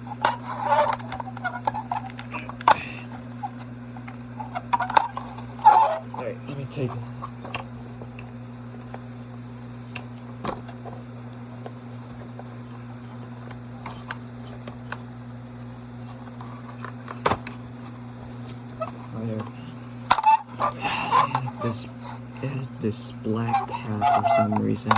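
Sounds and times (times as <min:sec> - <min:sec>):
plastic parts clicking and knocking: 0:00.0 - 0:06.2, 0:20.1 - 0:21.6.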